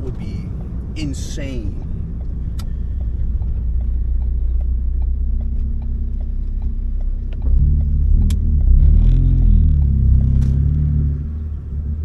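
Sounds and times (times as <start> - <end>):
faint regular ticking: 0.0 - 10.7
car engine running at low speed: 0.0 - 12.0.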